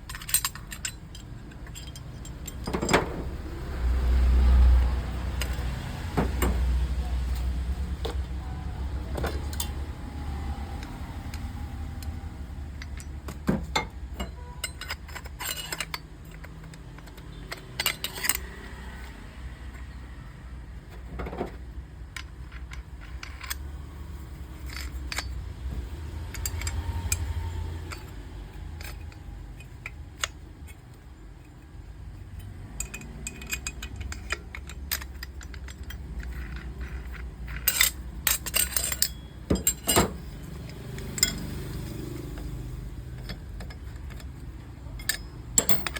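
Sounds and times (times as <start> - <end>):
small metal objects clinking: 0.0 - 3.2, 32.4 - 45.9.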